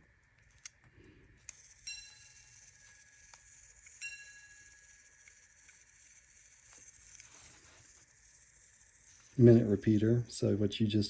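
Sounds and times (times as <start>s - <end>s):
watch chiming on gongs: 1.5s - 3.2s, 3.8s - 5.2s.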